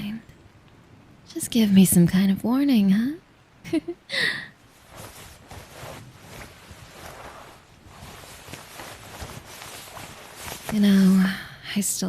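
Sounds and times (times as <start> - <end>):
clothing rustling: 4.6 - 11.4.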